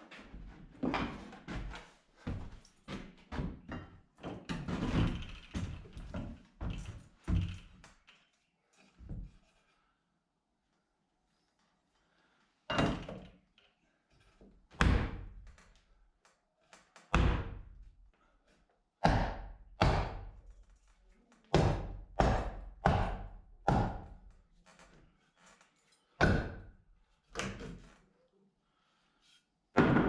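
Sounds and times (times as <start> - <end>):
heavy knocks on wooden boards: 14.8 - 15.3, 17.2 - 17.6, 19.0 - 20.4, 21.5 - 24.1, 26.2 - 26.6, 29.8 - 30.0.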